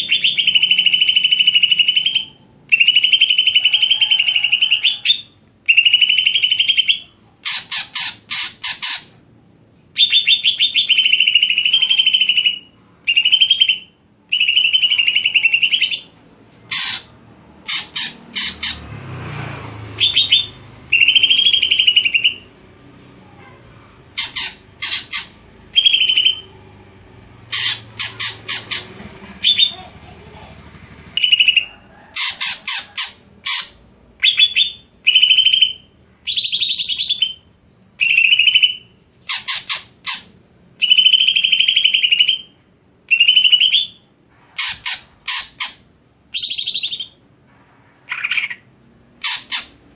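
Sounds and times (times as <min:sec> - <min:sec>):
bird singing trilling phrases: 0:00.0 - 0:18.9, 0:19.9 - 0:23.2, 0:24.1 - 0:26.6, 0:27.4 - 0:30.5, 0:31.1 - 0:47.4, 0:48.1 - 0:49.9.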